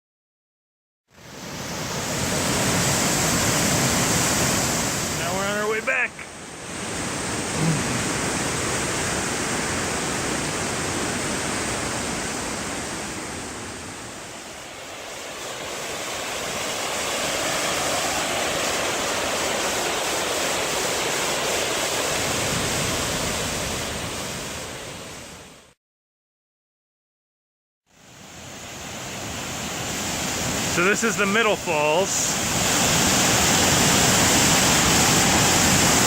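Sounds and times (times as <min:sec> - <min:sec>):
waterfall roaring: 0:07.2 - 0:13.0, 0:29.4 - 0:36.0.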